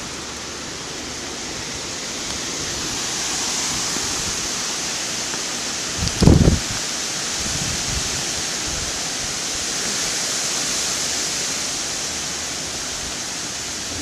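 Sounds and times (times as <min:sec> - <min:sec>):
wind buffeting microphone: 0:00.0 - 0:09.7
heavy rain: 0:00.0 - 0:14.0
strong wind: 0:00.0 - 0:14.0.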